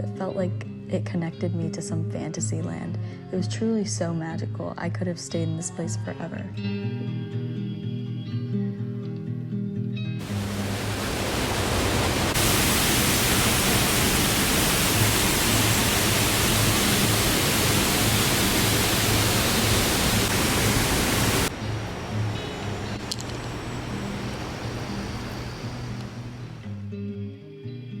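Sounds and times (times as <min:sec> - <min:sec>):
soft background music: 0:00.0 - 0:10.6
waterfall rushing: 0:10.2 - 0:26.6.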